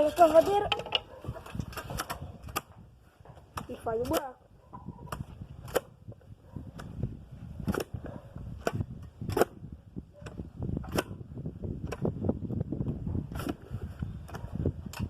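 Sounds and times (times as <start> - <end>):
post-hole digger striking soil: 3.4 - 4.4, 5.0 - 12.4, 13.3 - 15.0.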